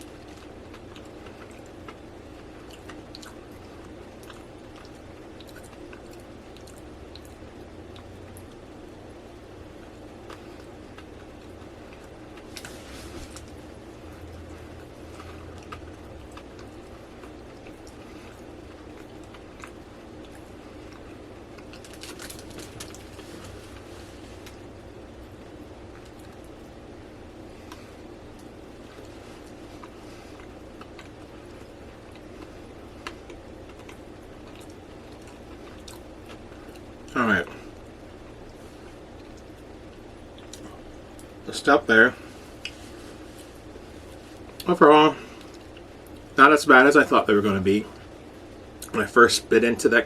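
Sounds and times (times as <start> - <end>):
person chewing soft food: 0.0 - 41.4, 42.1 - 46.4, 47.9 - 49.0
steady low hum: 0.0 - 50.0
person chewing with wet mouth clicks: 2.6 - 8.6, 27.7 - 36.9, 40.3 - 41.3.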